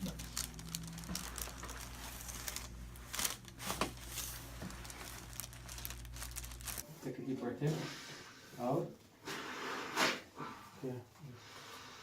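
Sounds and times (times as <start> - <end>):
crinkling and rustling on table: 0.0 - 6.8.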